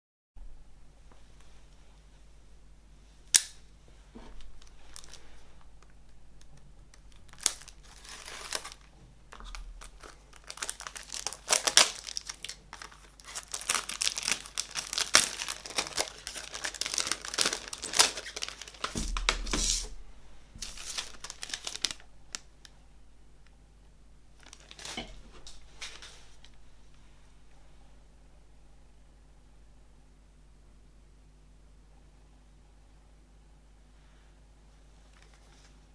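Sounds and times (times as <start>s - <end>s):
plastic wrap tearing and crinkling: 4.4s - 5.9s, 6.5s - 20.0s, 20.6s - 22.5s, 24.4s - 26.6s.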